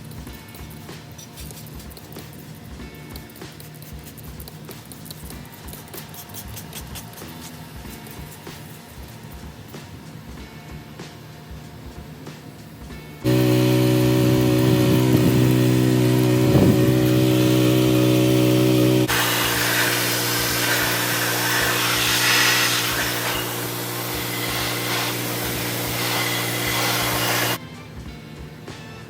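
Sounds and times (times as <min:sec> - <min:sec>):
hiss: 0:13.2 - 0:27.6
small motor humming: 0:13.2 - 0:27.6.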